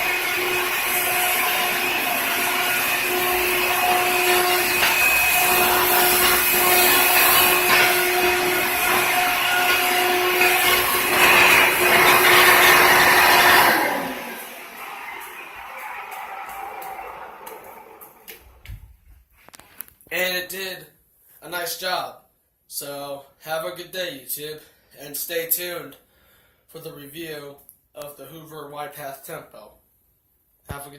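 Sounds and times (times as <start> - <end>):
vacuum cleaner running: 0.0 - 18.6
vacuum motor winding down: 0.0 - 18.6.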